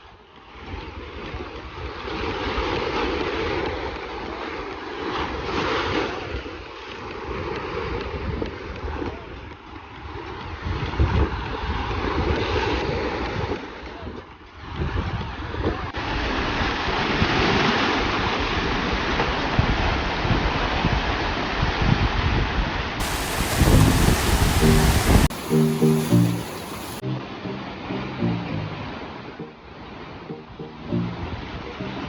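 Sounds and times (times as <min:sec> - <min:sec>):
water rushing: 0:23.0 - 0:27.0
wind buffeting microphone: 0:23.0 - 0:27.0.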